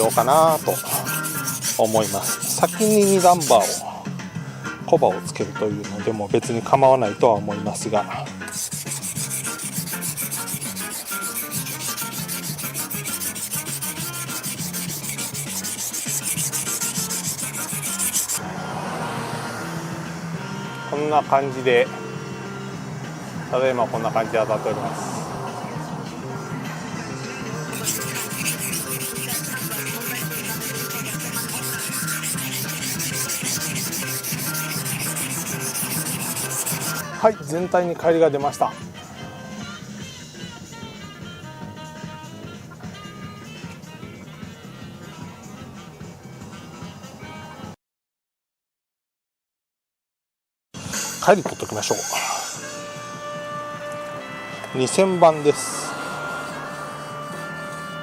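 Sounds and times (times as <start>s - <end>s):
knife scraping on whetstone: 0.0s - 3.8s, 8.5s - 18.4s, 27.8s - 37.0s.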